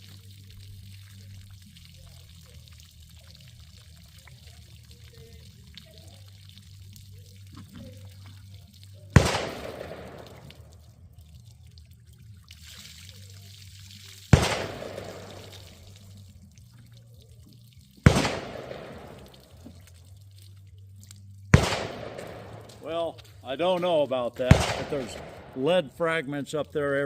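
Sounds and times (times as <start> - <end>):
faint trickling water: 0.0 - 27.0
loud sharp bangs: 9.2 - 10.7, 14.3 - 15.6, 18.1 - 19.3, 21.5 - 23.1, 24.4 - 26.0.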